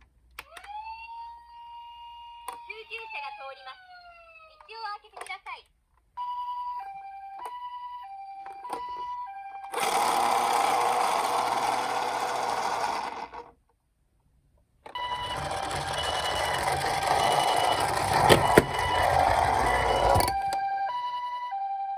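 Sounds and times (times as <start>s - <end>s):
two-tone ambulance siren: 0.4s - 4.7s, 6.2s - 10.6s, 14.9s - 21.9s
loud steady whirring: 9.8s - 13.5s, 15.1s - 20.4s.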